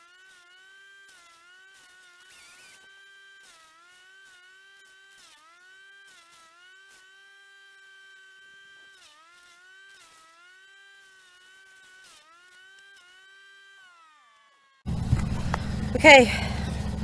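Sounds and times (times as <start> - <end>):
faint wood chipper whine: 14.9 - 17.0.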